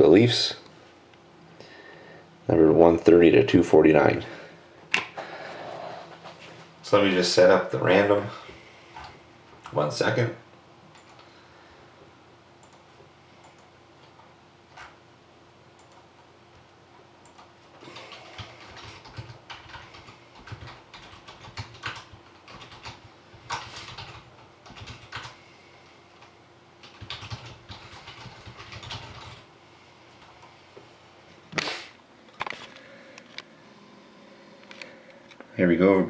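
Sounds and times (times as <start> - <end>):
typing on keyboard: 17.2 - 25.4, 26.2 - 29.4.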